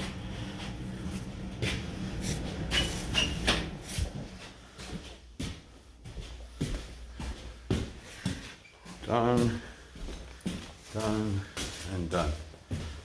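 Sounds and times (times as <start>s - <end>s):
footsteps on hardwood floor: 0.0s - 13.0s
floor squeaks: 1.6s - 4.2s.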